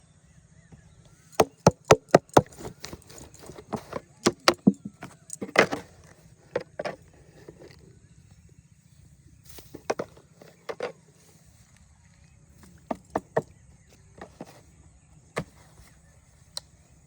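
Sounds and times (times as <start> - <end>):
sharp knocks or slaps: 1.4 - 3.0.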